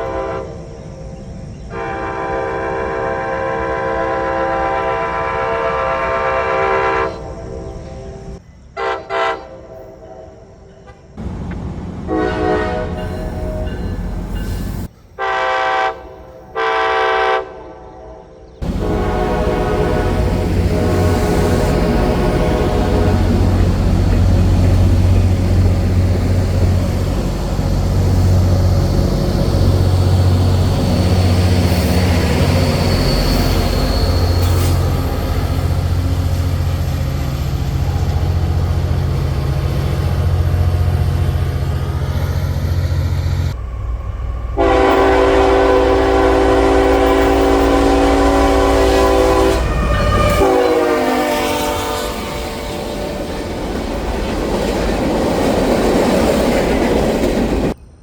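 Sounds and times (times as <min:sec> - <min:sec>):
locomotive air horn blasts: 0:00.0 - 0:00.6, 0:01.7 - 0:08.2, 0:08.8 - 0:10.4, 0:12.1 - 0:14.0, 0:15.2 - 0:25.2, 0:44.6 - 0:53.3
diesel locomotive engine: 0:00.0 - 0:58.0
train clattering over rails: 0:10.6 - 0:15.1, 0:18.6 - 0:58.0.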